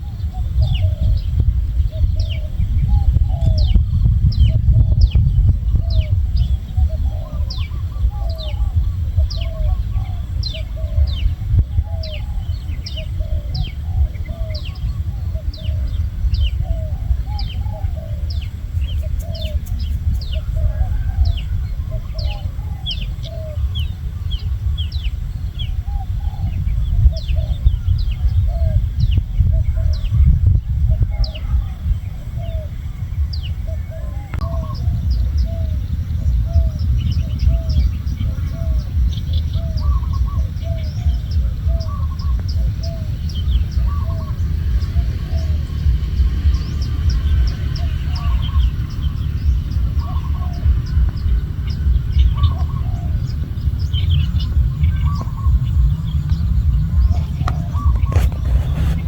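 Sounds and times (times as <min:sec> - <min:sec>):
steady low rumble: 0:00.0 - 0:59.0
high falling bird chirps: 0:12.0 - 0:27.7.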